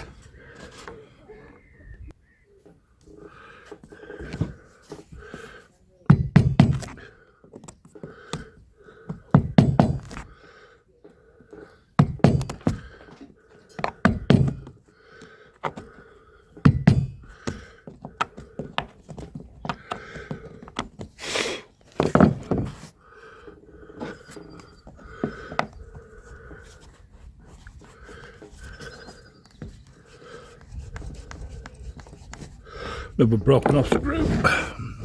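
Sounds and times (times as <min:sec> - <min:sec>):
hammer knocking on wooden boards: 0:06.1 - 0:07.0, 0:09.1 - 0:10.2, 0:12.0 - 0:12.8, 0:13.8 - 0:14.7, 0:16.6 - 0:17.6.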